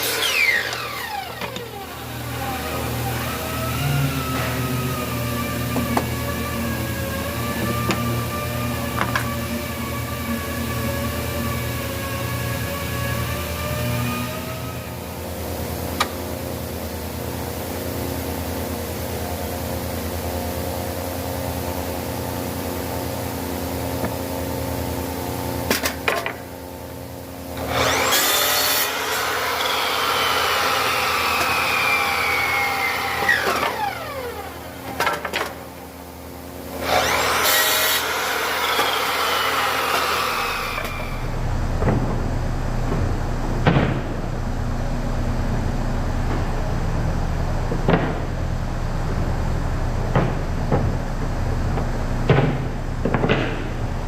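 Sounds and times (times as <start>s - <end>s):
power saw cutting wood: 0.0s - 10.3s, 27.6s - 35.0s, 36.8s - 41.3s
steady machine hum: 0.0s - 54.0s.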